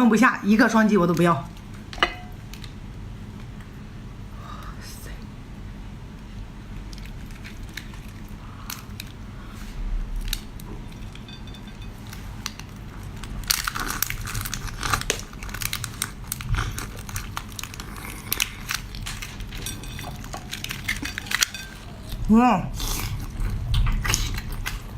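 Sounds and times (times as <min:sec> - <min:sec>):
person chewing with wet crunching: 0:06.7 - 0:24.9.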